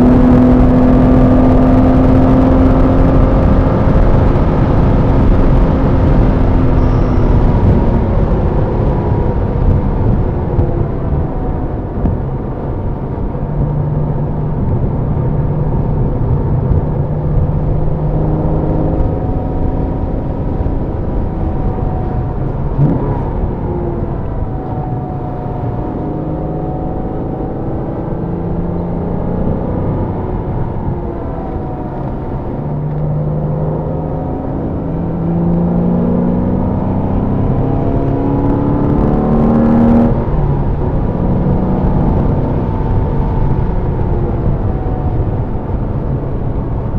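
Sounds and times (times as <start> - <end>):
car engine revving through gears: 0.0 - 46.9.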